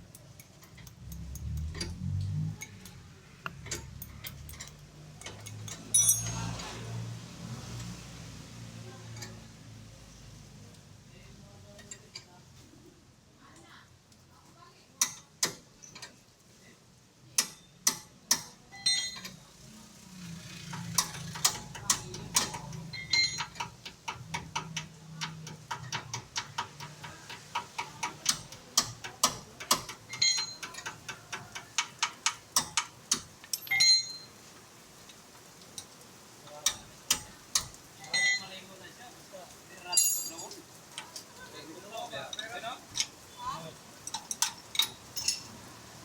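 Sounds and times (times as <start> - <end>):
hand tools clinking on metal: 0.1 - 2.0, 3.6 - 6.8, 17.4 - 19.4, 20.9 - 34.3, 36.5 - 38.6, 39.8 - 41.4, 42.0 - 43.3, 44.0 - 45.6.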